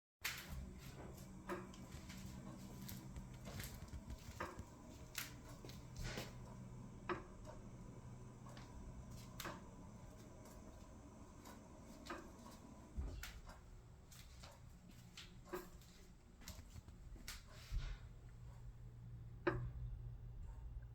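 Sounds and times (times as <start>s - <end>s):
refrigerator humming: 0.2s - 20.9s.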